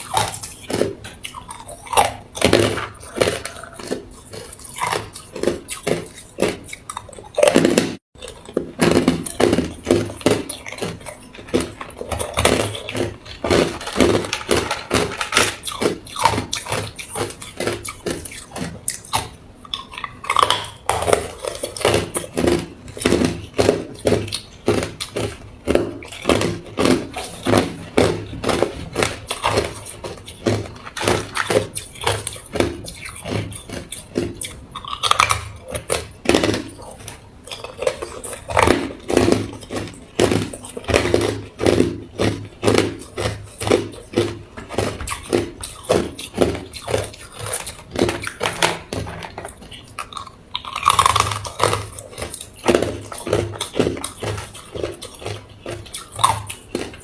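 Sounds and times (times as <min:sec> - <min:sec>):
person crunching ice cubes: 0:00.0 - 0:57.0.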